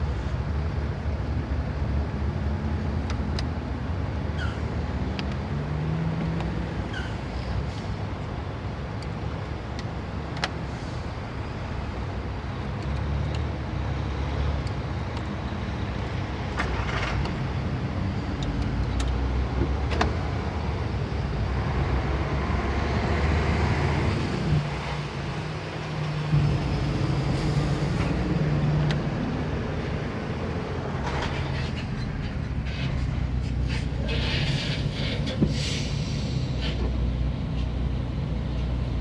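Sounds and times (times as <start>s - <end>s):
vehicle engines rumbling: 0.0s - 39.0s.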